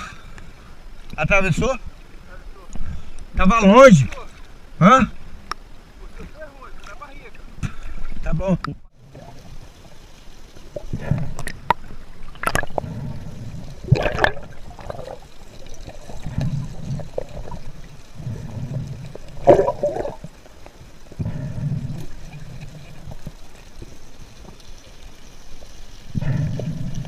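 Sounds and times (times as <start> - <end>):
water gurgling and sloshing: 0.0 - 27.0
breathing through a snorkel: 10.8 - 11.5, 12.6 - 13.9, 18.1 - 19.2, 21.2 - 22.6, 26.1 - 27.0
water splash: 13.8 - 18.4, 19.0 - 20.4.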